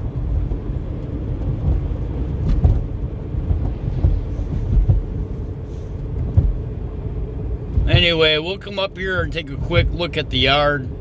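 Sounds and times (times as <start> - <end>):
car engine and road rumble: 0.0 - 11.0
knocks from road bumps: 1.4 - 5.3, 6.2 - 6.7.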